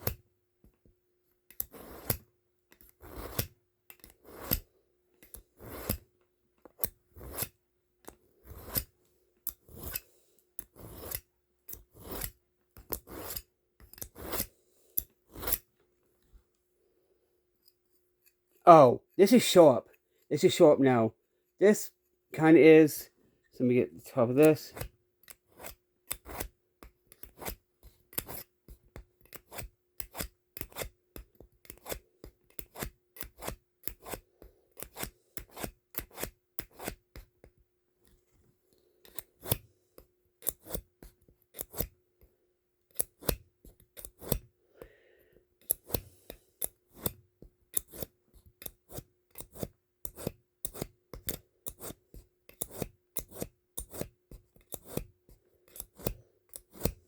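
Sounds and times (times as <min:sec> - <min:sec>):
knife scraping through sharpener: 0:01.5 - 0:06.0, 0:06.8 - 0:08.9, 0:09.5 - 0:15.7, 0:24.5 - 0:26.5, 0:27.1 - 0:28.5, 0:31.6 - 0:34.2, 0:34.8 - 0:37.0, 0:39.0 - 0:39.6, 0:40.4 - 0:40.9, 0:41.5 - 0:41.9, 0:43.0 - 0:43.4, 0:44.0 - 0:44.5, 0:45.6 - 0:55.1, 0:55.7 - 0:57.0.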